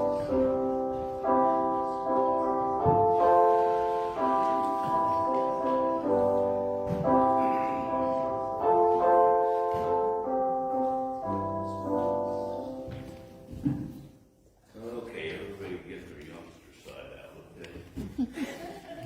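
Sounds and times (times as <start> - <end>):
piano playing slow chords: 0.0 - 14.5.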